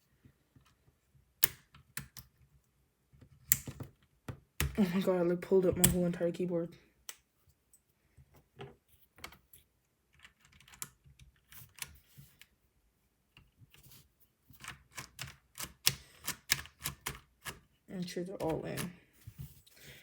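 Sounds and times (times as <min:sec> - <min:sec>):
sharp plastic keyboard clicks: 0:14.6 - 0:17.6.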